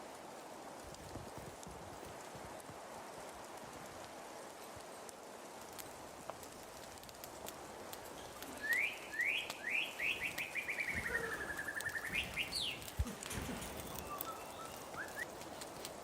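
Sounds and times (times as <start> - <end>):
songbird singing: 8.2 - 15.4.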